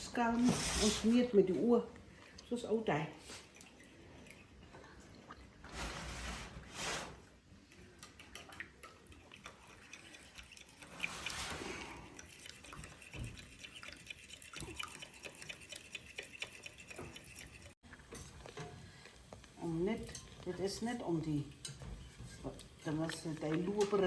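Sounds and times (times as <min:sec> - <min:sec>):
utensils clicking and tapping: 0:07.8 - 0:24.0.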